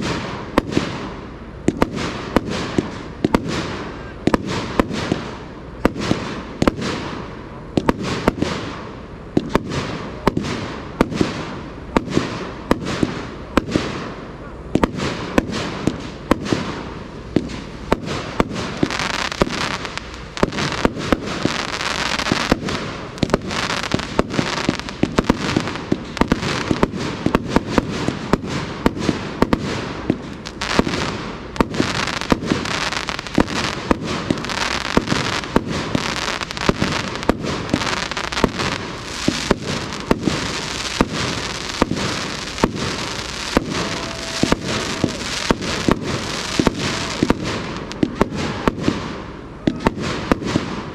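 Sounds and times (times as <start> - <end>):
firework shot reports: 0.0 - 50.9
rushing hiss: 29.8 - 48.0.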